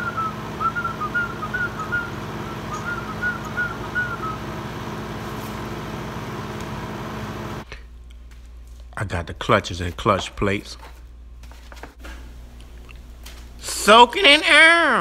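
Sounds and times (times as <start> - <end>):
person whistling a tune: 0.0 - 4.4
steady background hum: 0.0 - 15.0.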